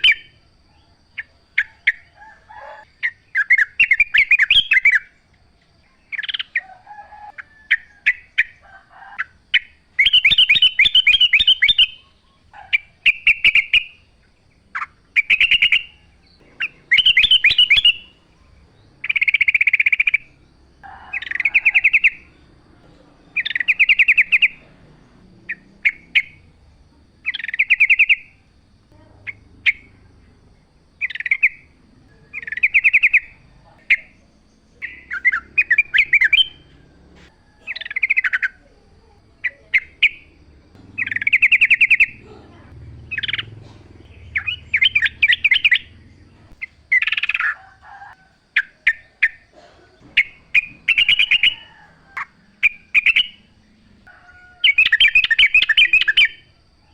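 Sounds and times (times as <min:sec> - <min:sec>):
bulbul warbling song: 0:14.8 - 0:20.4, 0:23.3 - 0:26.5, 0:31.0 - 0:36.8, 0:39.4 - 0:47.6, 0:48.6 - 0:53.6.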